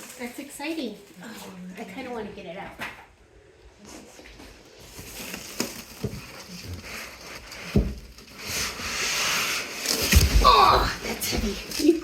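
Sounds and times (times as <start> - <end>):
scraping rustling rub: 3.9 - 12.0.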